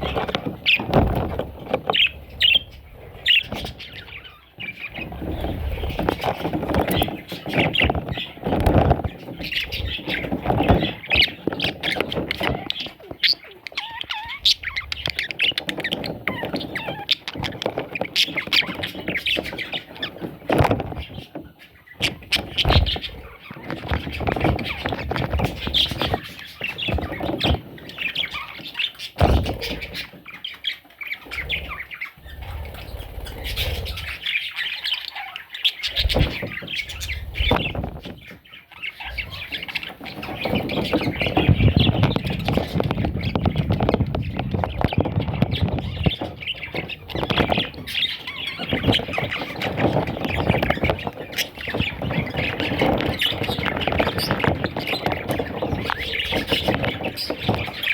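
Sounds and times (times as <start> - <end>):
budgies chattering and squawking: 0.0 - 57.9.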